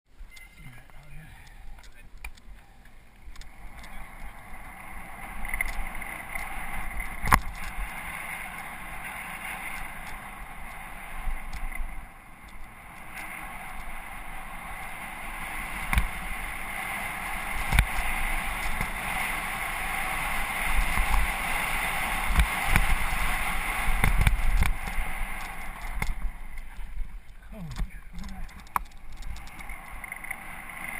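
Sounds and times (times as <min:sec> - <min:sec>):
bike tyre trail noise: 0:00.1 - 0:30.9.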